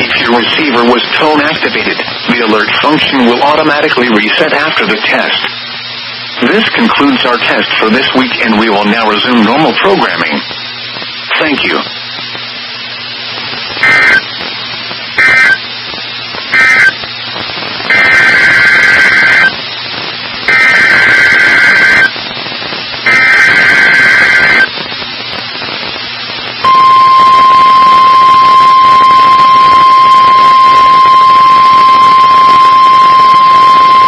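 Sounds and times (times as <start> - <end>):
raspy two-tone data bursts: 13.4 - 26.0, 26.6 - 34.0
loud warning alarm tone: 13.8 - 14.3, 15.2 - 15.6, 16.5 - 17.0, 17.9 - 19.5, 20.5 - 22.1, 23.1 - 24.7, 26.6 - 34.0.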